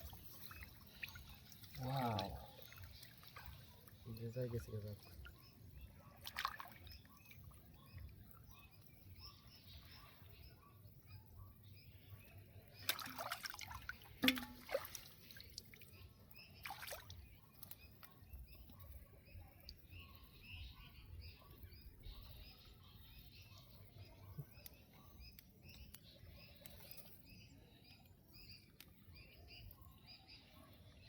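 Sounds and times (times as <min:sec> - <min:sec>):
water splashing and dripping: 0:00.0 - 0:05.4, 0:06.1 - 0:08.4, 0:12.7 - 0:18.5.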